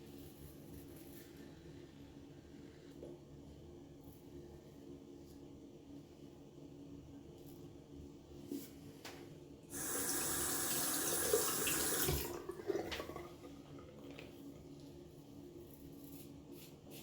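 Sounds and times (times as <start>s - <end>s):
sink tap running: 9.7s - 14.2s.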